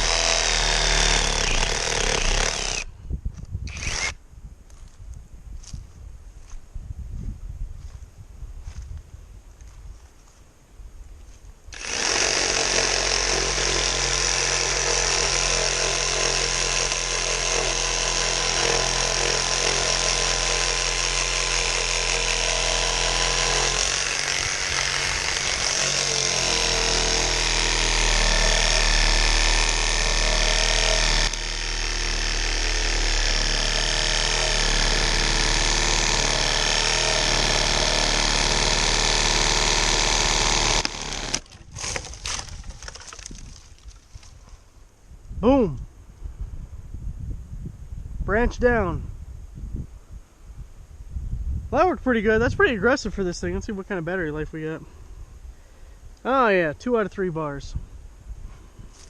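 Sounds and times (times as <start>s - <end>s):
reciprocating saw cutting wood: 0.0s - 2.9s, 3.7s - 4.2s, 11.7s - 43.4s.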